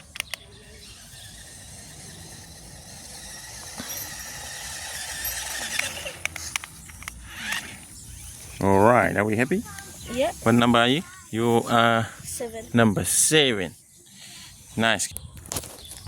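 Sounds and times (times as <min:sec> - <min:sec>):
toy truck motor whining: 0:00.2 - 0:08.9, 0:13.9 - 0:14.8.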